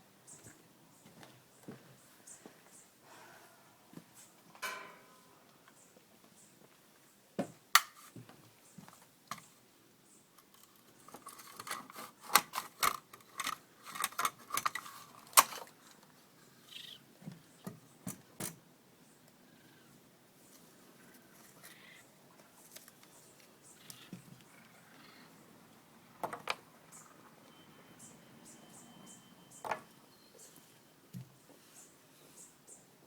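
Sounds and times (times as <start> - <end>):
baby raccoons chittering: 16.5 - 17.1, 23.6 - 25.5.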